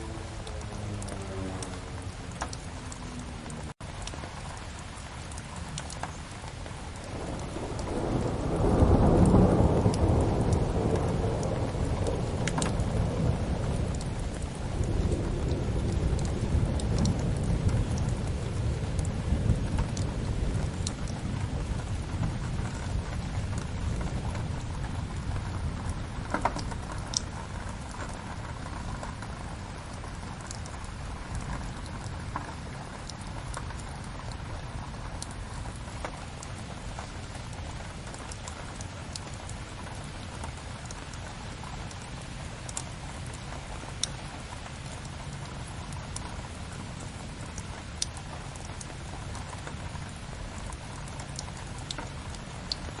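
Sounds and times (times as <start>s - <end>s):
thunder rumble: 0.0s - 3.8s, 7.0s - 38.8s
steady rain: 0.0s - 53.0s.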